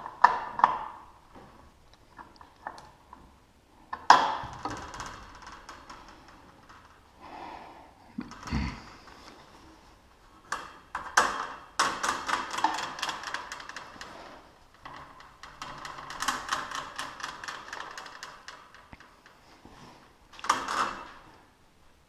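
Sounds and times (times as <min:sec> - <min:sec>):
metallic chain clicking and rattling: 0:10.5 - 0:19.5.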